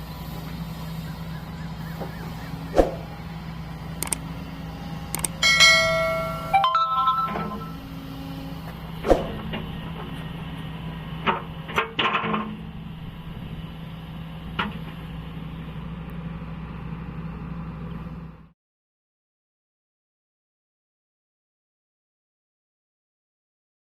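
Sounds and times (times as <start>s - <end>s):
diesel engine idling: 0.0s - 18.5s.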